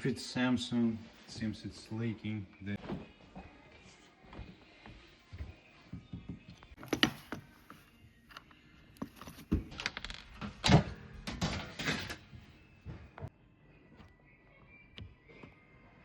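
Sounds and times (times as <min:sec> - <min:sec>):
dishwasher parts knocking and rattling: 0:09.5 - 0:12.3.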